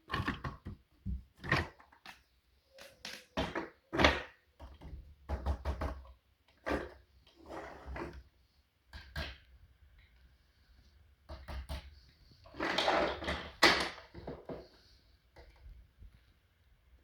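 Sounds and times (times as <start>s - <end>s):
hard objects knocking and clattering: 0.1s - 1.8s.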